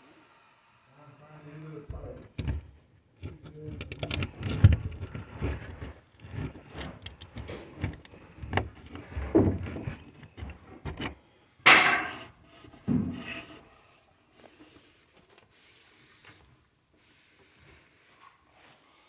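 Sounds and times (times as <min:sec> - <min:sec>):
knocks and clatter on wood: 0:01.9 - 0:13.6.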